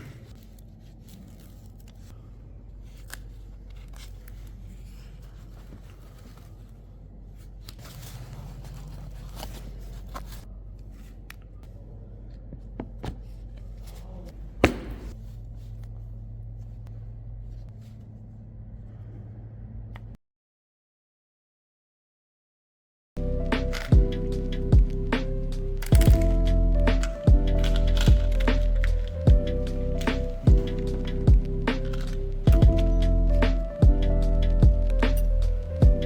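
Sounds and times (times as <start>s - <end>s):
steady low hum: 0.0s - 20.2s, 23.2s - 36.0s
handling clicks and rustles: 23.4s - 36.0s.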